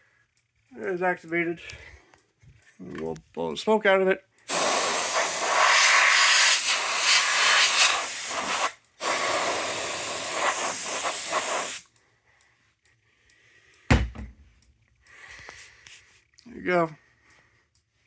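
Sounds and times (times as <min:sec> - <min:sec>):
hissing blasts of air: 0:04.5 - 0:11.9
thump: 0:13.9 - 0:14.5.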